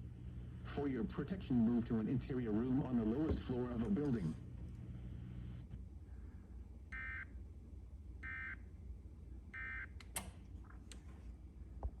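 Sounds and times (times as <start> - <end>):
low hum: 0.0 - 6.5.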